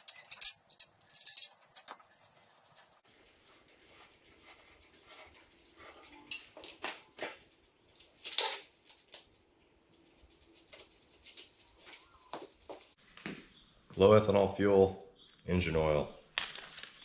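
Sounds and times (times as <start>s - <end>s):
parts and packaging handling: 0.0s - 3.0s, 5.8s - 9.3s, 16.4s - 17.0s.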